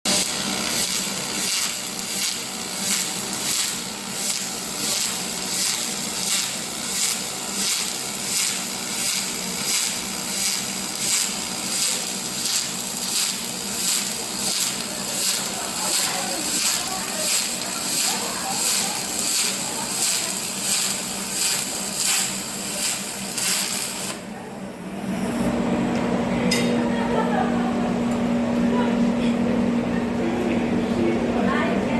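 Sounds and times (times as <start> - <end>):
welding arc hissing: 0.1 - 24.3.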